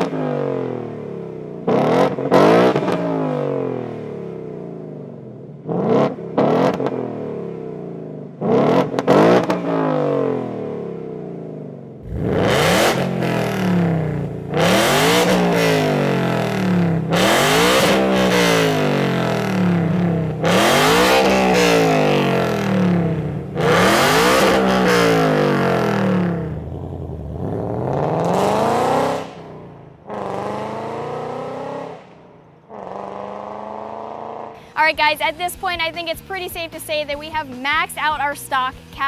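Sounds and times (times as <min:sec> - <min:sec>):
car engine revving hard: 0:01.6 - 0:04.5, 0:05.6 - 0:07.6, 0:08.4 - 0:10.9, 0:12.0 - 0:34.5
car engine idling: 0:10.6 - 0:30.9.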